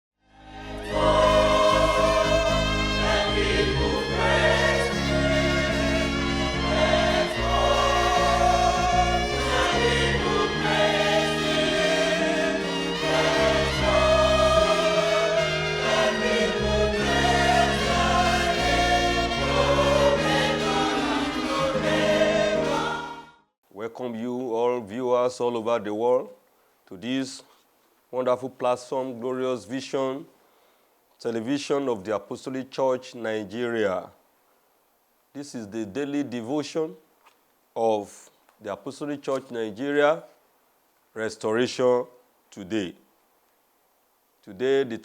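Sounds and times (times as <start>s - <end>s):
gospel choir singing: 0.3s - 23.4s
instrumental backing: 0.5s - 23.2s.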